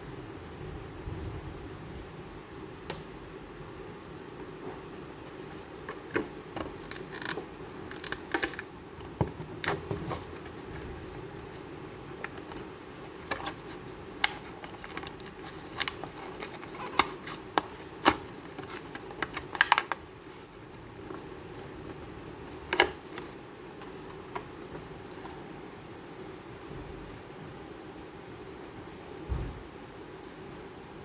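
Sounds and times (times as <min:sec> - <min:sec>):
packaging clicks and crinkles: 0:05.3 - 0:25.4.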